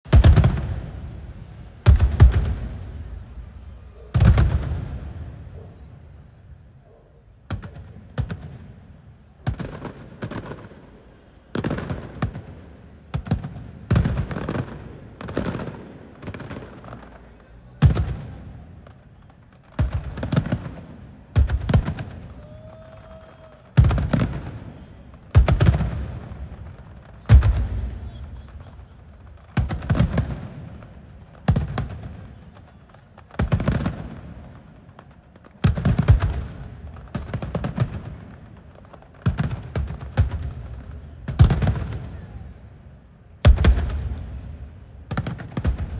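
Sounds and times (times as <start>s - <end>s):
rolling echo: 0.1s - 45.9s.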